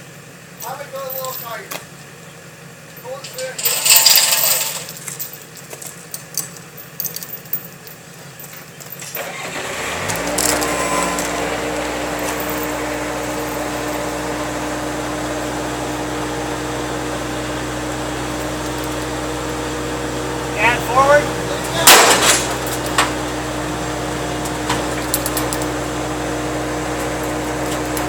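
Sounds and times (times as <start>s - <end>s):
vehicle engine starting and idling: 0.0s - 28.0s
light metallic clinks and rattles: 0.6s - 1.8s, 2.9s - 9.3s, 12.1s - 14.2s, 24.9s - 25.8s.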